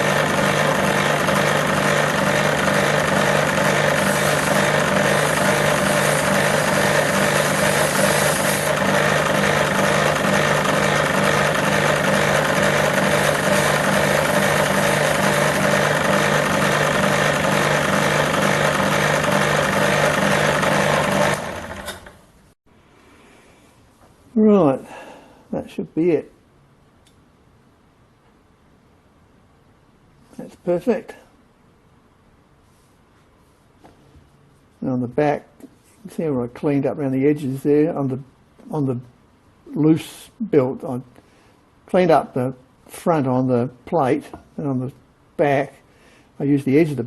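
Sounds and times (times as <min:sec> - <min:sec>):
metal lathe running: 0:00.0 - 0:22.2.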